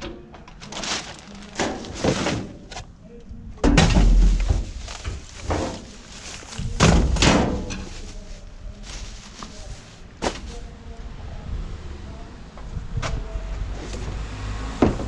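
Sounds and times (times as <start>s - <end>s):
knocks and heavy thuds: 0.9s - 2.8s, 3.6s - 10.7s.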